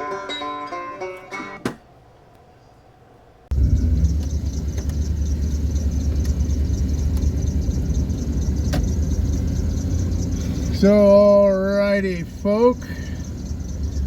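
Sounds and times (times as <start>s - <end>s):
van engine running: 3.5s - 14.0s.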